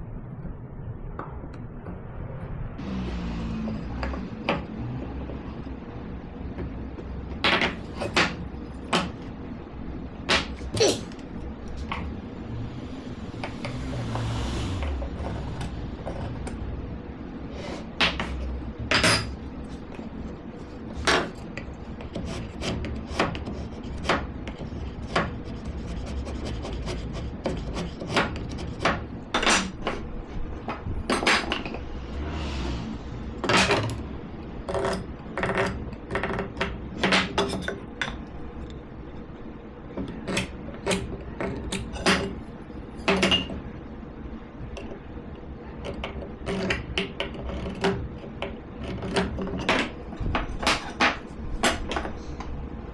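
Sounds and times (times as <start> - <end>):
scraping on wood: 3.1 - 12.4, 13.4 - 38.8, 39.9 - 43.8, 45.8 - 52.4
knocks of wooden pieces and tools: 6.5 - 9.4, 10.2 - 12.1, 17.6 - 31.8, 34.7 - 38.2, 39.9 - 43.7, 45.8 - 52.5.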